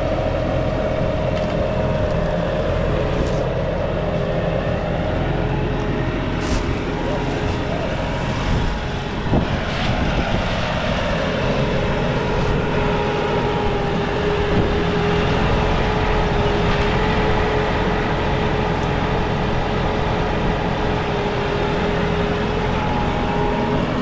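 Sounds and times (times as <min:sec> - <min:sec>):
tractor engine drone with whine: 0:00.0 - 0:24.0.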